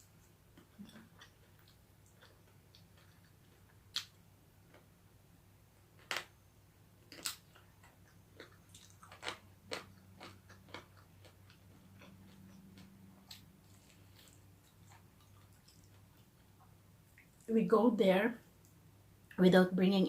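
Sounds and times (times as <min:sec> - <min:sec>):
chewing: 0:00.6 - 0:04.1, 0:07.1 - 0:17.4
crunching chicken bones: 0:08.4 - 0:16.0.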